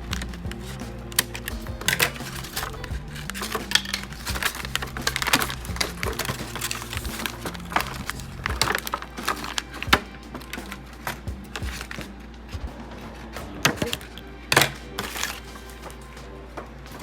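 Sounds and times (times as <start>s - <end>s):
plastic packaging crinkling: 0.0s - 12.1s, 15.0s - 16.0s
background music: 0.0s - 17.0s.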